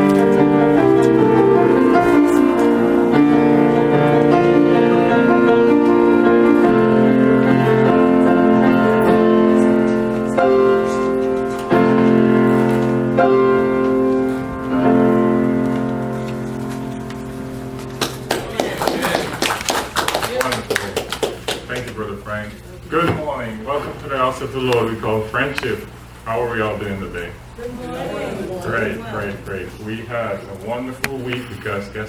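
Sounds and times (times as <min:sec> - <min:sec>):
slow keyboard chords: 0:00.0 - 0:20.0.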